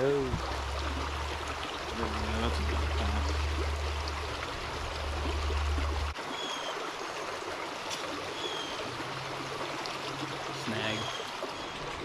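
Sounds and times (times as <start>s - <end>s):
low rumble: 0.0s - 6.2s
creek water rushing: 0.0s - 12.0s.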